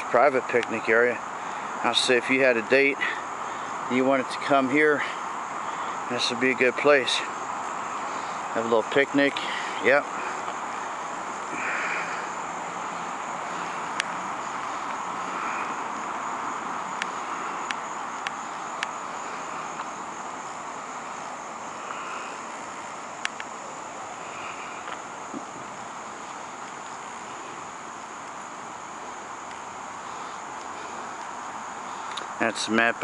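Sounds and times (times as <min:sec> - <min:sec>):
insects chorus pulsing: 0:00.0 - 0:33.0
steady rushing noise: 0:00.0 - 0:33.0
sharp clicks: 0:17.0 - 0:19.0, 0:23.2 - 0:23.6.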